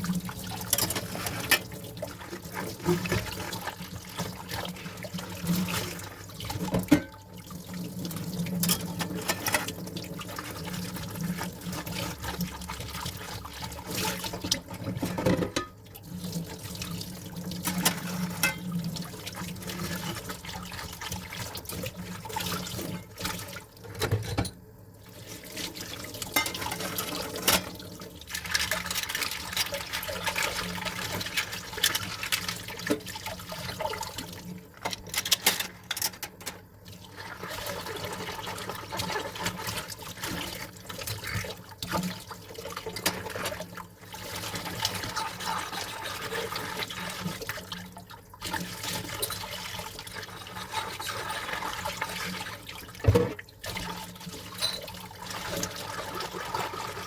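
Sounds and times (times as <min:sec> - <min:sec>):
dishes clinking: 0:06.8 - 0:07.2, 0:15.0 - 0:15.8, 0:18.4 - 0:18.7, 0:54.5 - 0:55.0
tap water splashing: 0:53.0 - 0:53.9.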